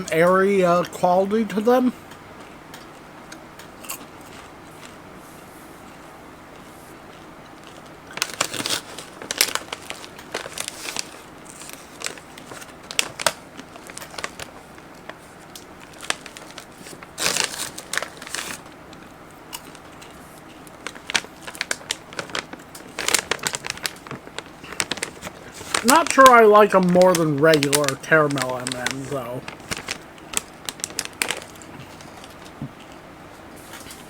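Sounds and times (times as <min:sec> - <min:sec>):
candy bag crinkling: 0:06.6 - 0:33.0.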